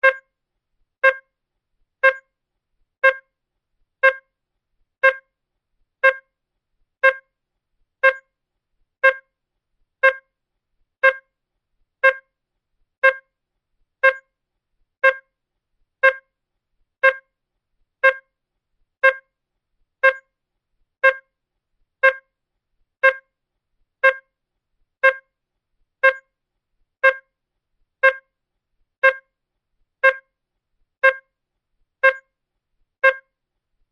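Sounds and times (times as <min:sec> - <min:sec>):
short mid-pitched beeps: 0:00.0 - 0:00.2, 0:06.0 - 0:06.2, 0:24.0 - 0:24.2, 0:29.0 - 0:29.2, 0:30.0 - 0:30.2, 0:32.0 - 0:32.2, 0:33.0 - 0:33.2.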